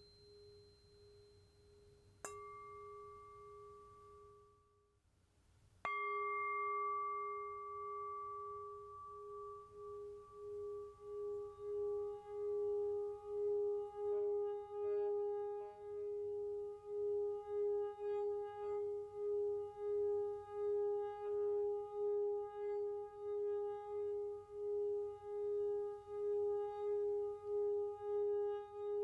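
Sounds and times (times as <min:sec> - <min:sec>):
singing bowl ringing: 0:00.0 - 0:04.4.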